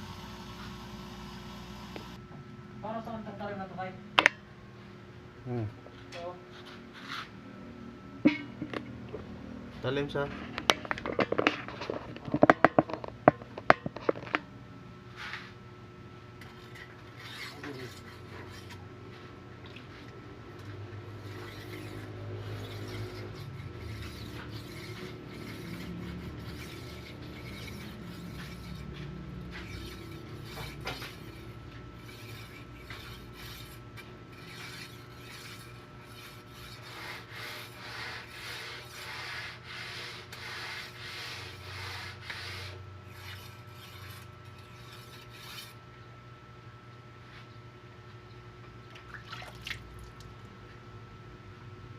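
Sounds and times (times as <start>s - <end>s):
blade scraping grinding wheel: 16.4s - 19.3s, 20.6s - 45.8s
bench grinder motor humming: 21.0s - 45.8s.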